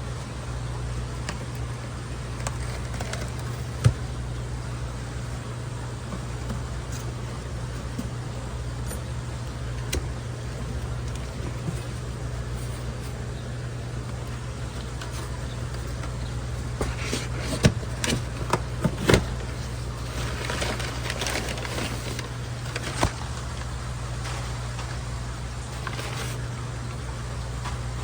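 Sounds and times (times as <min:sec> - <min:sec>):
low hum of equipment: 0:00.0 - 0:28.0
packaging crinkling: 0:02.2 - 0:04.2, 0:14.1 - 0:27.1.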